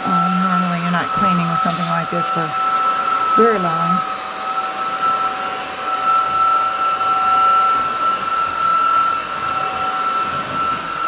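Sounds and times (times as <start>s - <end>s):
stick vacuum running: 0.0s - 11.0s.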